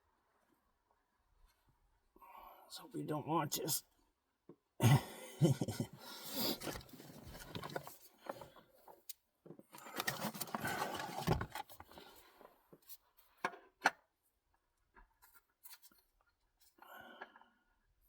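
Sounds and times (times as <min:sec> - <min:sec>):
rubbing and rustling: 0:06.2 - 0:09.0, 0:09.8 - 0:13.4.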